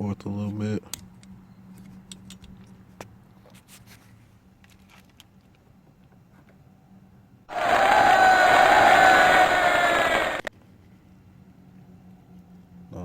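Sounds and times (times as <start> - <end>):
loud noisy burst: 7.5 - 10.5.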